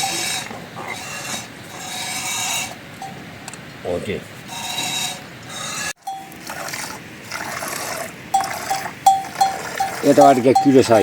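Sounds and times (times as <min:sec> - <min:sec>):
cowbell clanking: 0:00.0 - 0:00.2, 0:03.0 - 0:03.2, 0:06.0 - 0:06.4, 0:08.3 - 0:11.0
rough rubbing sound: 0:04.2 - 0:11.0.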